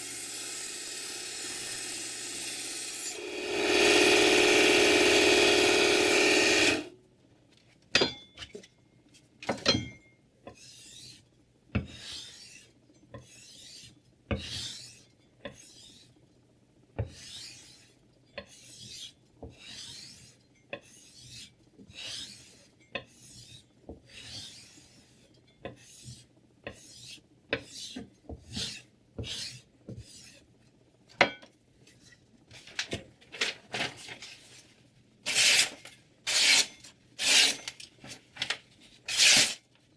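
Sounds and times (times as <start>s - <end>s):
grinder motor: 0.0s - 6.9s
knife blade scraping: 35.3s - 37.8s, 39.1s - 39.6s.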